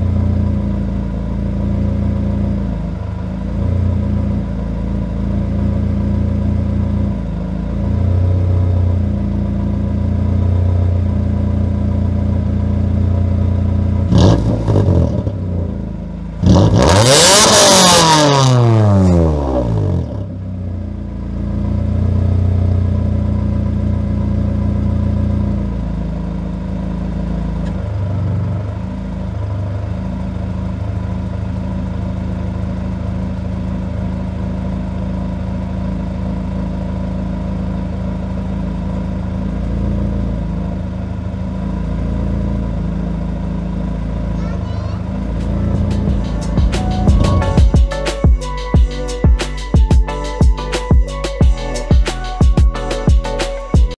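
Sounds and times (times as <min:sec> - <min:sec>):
car engine idling and revving: 0:00.0 - 0:53.9.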